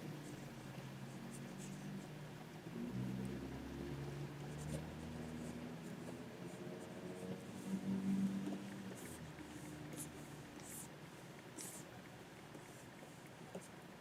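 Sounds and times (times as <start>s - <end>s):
low steady hum: 0.0s - 14.0s
pen nib scratching on screen: 8.4s - 10.9s, 11.6s - 11.9s.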